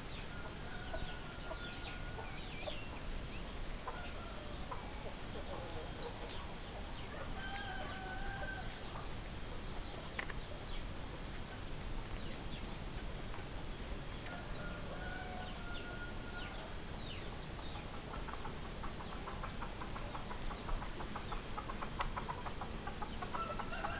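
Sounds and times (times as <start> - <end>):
steady background hiss: 0.0 - 23.9
rooster crowing: 7.1 - 8.8, 14.3 - 16.6, 23.3 - 23.9.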